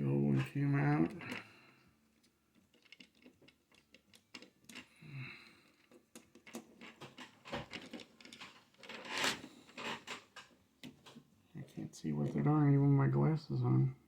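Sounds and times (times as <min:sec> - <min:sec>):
plastic parts clicking and rustling: 0:00.9 - 0:12.4
scraping rustle: 0:06.5 - 0:10.4.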